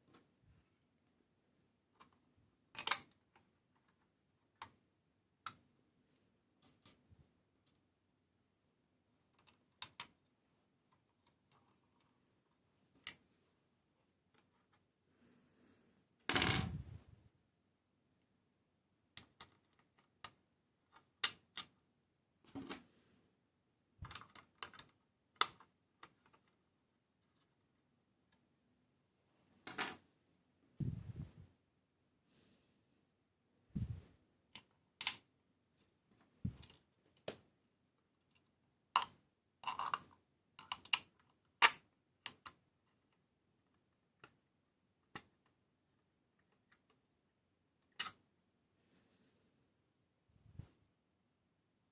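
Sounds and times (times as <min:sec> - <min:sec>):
small clicks of model pieces: 0:01.9 - 0:04.8, 0:09.3 - 0:10.2, 0:10.9 - 0:13.2, 0:19.1 - 0:21.8, 0:24.0 - 0:26.6, 0:36.5 - 0:37.4, 0:38.2 - 0:44.4, 0:45.0 - 0:45.6, 0:47.8 - 0:48.2.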